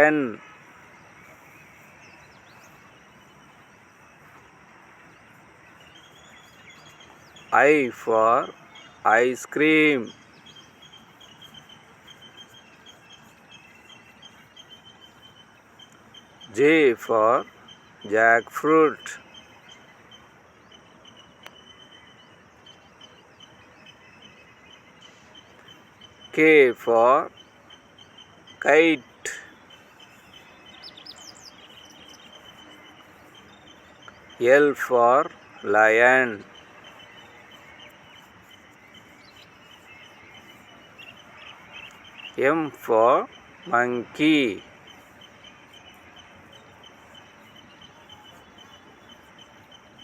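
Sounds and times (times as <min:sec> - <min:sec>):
faint background hiss: 0:00.0 - 0:50.0
faint high-pitched chirps: 0:00.0 - 0:50.0
thin steady high tone: 0:00.0 - 0:50.0.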